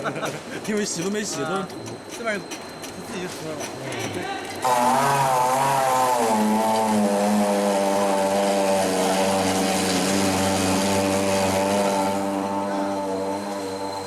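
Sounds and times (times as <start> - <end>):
machinery drone: 4.6 - 14.0
motor whine: 4.6 - 14.0.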